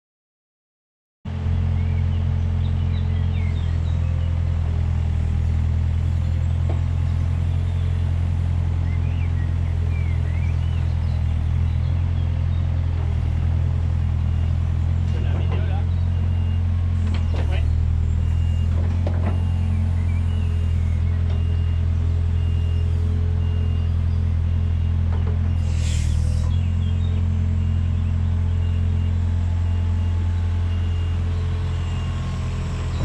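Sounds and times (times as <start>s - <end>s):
diesel engine idling: 1.3s - 33.0s
brief hiss: 25.6s - 26.5s.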